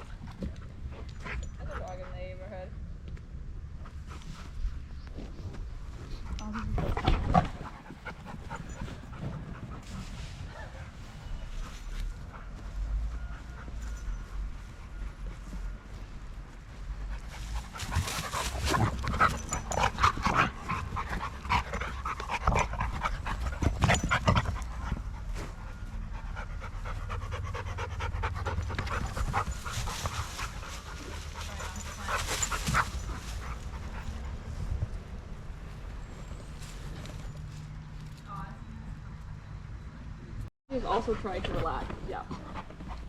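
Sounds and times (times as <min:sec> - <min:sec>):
dog panting hard: 0:06.0 - 0:13.8, 0:17.0 - 0:34.4.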